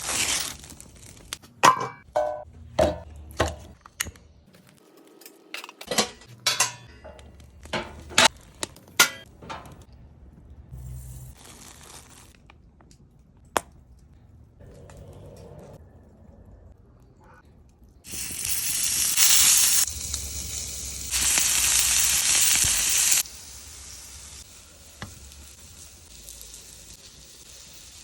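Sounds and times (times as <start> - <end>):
cooking gear clinking and knocking: 5.2 - 9.9.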